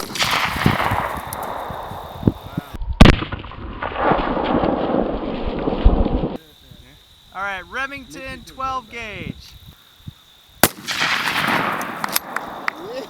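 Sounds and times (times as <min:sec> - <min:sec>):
pistol shot with echo: 0:00.0 - 0:01.0, 0:10.6 - 0:12.6
slowed-down gunshot rumble: 0:03.0 - 0:06.4.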